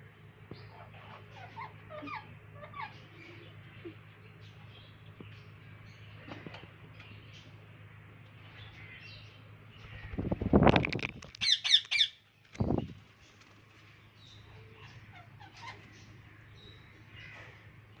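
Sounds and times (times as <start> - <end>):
parrots squawking and chirping: 0.6 - 3.9, 9.8 - 12.9, 14.3 - 17.7.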